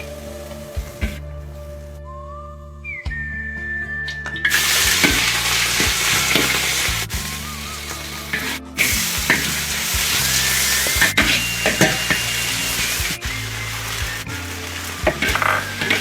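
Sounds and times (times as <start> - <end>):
background music: 0.0 - 16.0
food sizzling in hot oil: 4.5 - 16.0.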